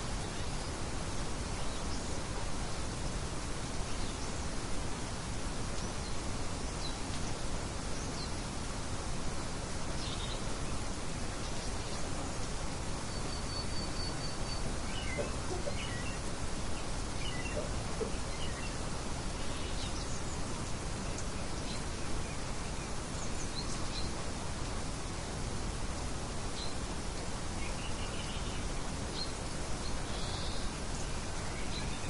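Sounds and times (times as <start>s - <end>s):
wind-like outdoor noise: 0.0s - 32.0s
birds chirping: 10.0s - 24.2s.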